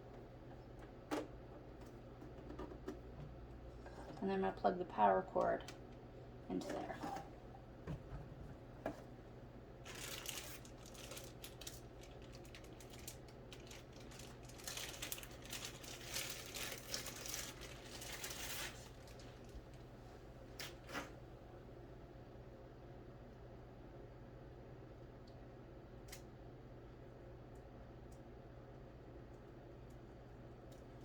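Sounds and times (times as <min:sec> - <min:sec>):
plastic packaging crinkling: 0:09.8 - 0:19.7.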